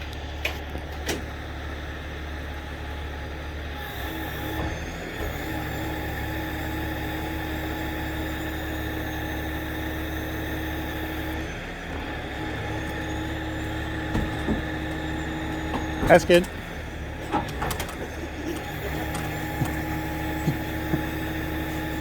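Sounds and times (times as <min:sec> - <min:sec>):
large vehicle engine idling: 0:00.0 - 0:22.0
short knocks: 0:12.7 - 0:22.0.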